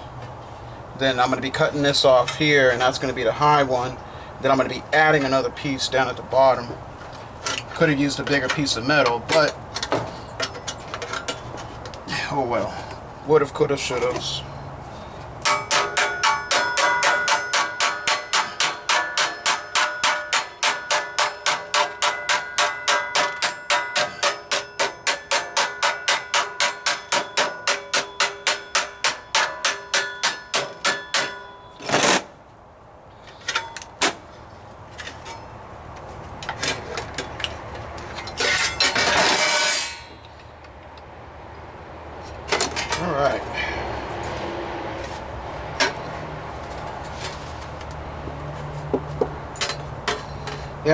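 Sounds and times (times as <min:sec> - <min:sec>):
hammer striking sheet steel: 0:15.4 - 0:32.3, 0:38.5 - 0:40.2.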